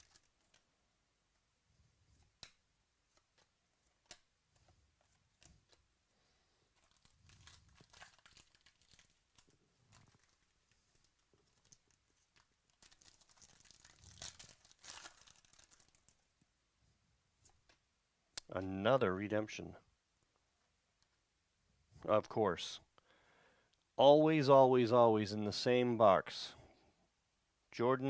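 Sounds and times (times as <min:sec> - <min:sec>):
wrappers tearing and crinkling: 0:00.0 - 0:00.6, 0:06.8 - 0:16.2.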